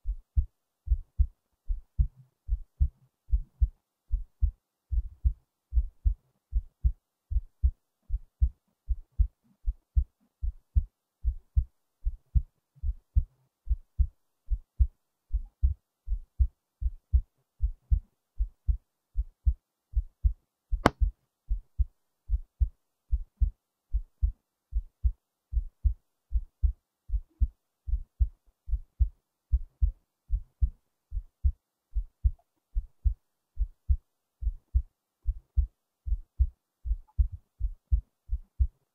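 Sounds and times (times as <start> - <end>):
human heartbeat: 0.0 - 38.9
sharp click: 20.8 - 21.0.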